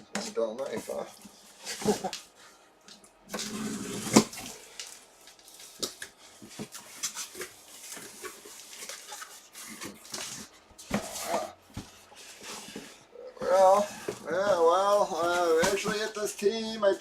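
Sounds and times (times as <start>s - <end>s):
cardboard and packaging rustling: 0.1s - 17.0s
knife cutting cardboard box: 3.3s - 4.5s.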